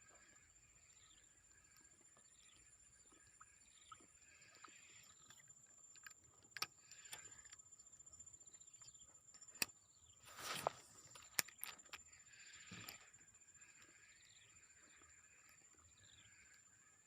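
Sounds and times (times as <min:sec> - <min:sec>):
faint rustling: 0:10.2 - 0:11.4.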